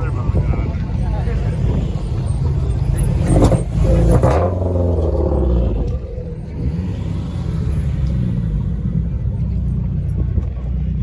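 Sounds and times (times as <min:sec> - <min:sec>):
car engine revving and droning: 0:00.4 - 0:11.0.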